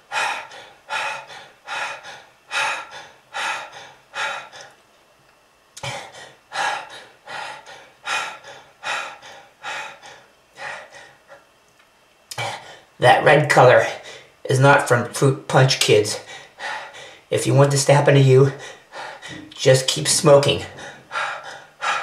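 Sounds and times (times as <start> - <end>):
person gasping for breath: 0.0 - 4.8, 5.8 - 11.4, 18.5 - 19.5, 20.6 - 22.0.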